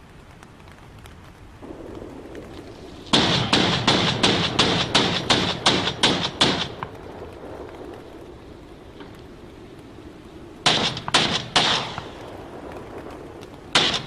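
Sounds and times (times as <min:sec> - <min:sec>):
rapid gunshots: 0:03.0 - 0:07.2, 0:10.6 - 0:12.5, 0:13.7 - 0:14.0.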